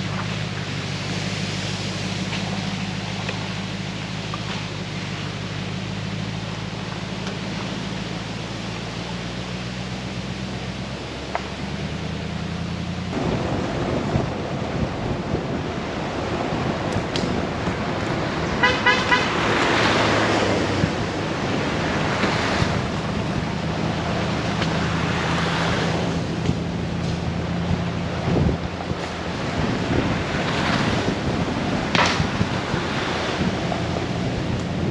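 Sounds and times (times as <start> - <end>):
vehicle engine hum and road noise: 0.0 - 34.9
short horn toots: 18.6 - 19.4.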